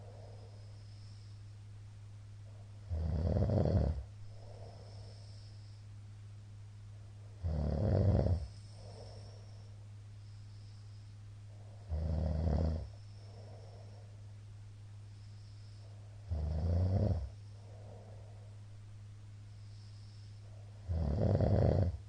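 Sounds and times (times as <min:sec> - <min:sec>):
man snoring loudly: 0:02.9 - 0:04.0, 0:07.4 - 0:08.5, 0:11.9 - 0:12.9, 0:16.3 - 0:17.3, 0:20.8 - 0:22.0
soft breath out: 0:04.2 - 0:06.0, 0:08.4 - 0:11.9, 0:19.5 - 0:20.8.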